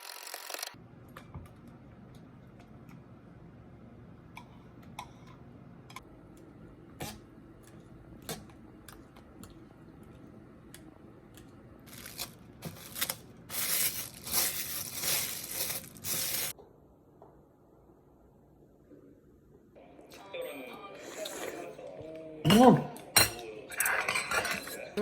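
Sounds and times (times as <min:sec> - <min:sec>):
plastic packaging tearing and crinkling: 0:11.8 - 0:16.5.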